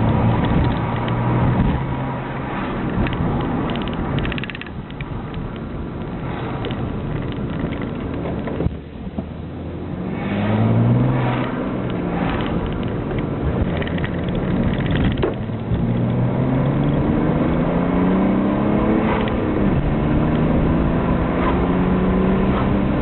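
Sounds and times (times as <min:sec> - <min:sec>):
car engine accelerating: 0:09.4 - 0:23.0.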